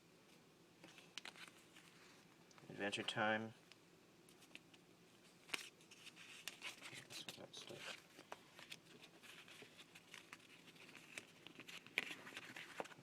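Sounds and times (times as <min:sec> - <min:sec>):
paper stickers rustling: 0:05.4 - 0:13.0.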